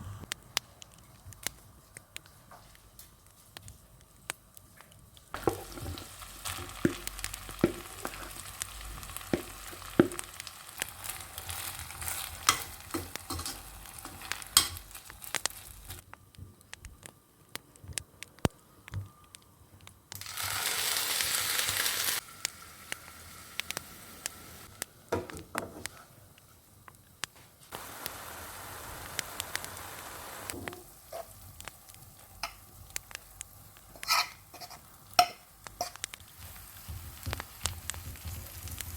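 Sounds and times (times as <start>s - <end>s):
food sizzling in a pan: 5.3s - 16.0s, 20.2s - 26.0s, 27.7s - 38.9s
utensil scraping a pan: 33.9s - 36.0s.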